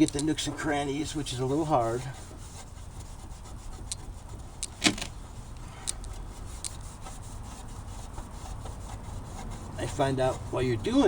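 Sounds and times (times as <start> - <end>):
cloth rubbing on plastic: 0.0 - 5.6, 6.2 - 11.0.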